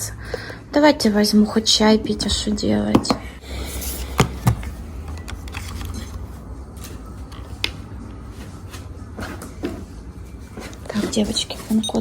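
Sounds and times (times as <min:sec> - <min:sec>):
rustling of objects being handled: 0:05.4 - 0:12.0.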